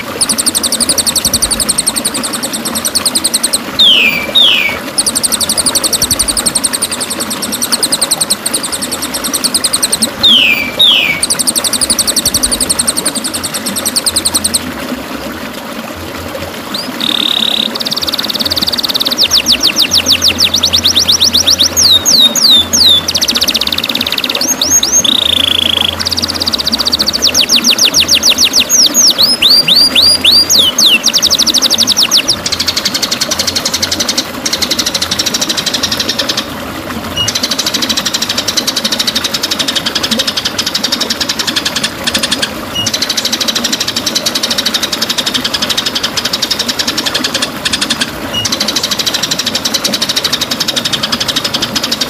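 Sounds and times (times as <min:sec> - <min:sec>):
rapid rattling trill: 0:00.0 - 0:14.6
bird singing whistled notes: 0:00.1 - 0:14.6, 0:16.7 - 0:32.8, 0:37.2 - 0:37.4, 0:42.8 - 0:43.0, 0:48.3 - 0:48.6.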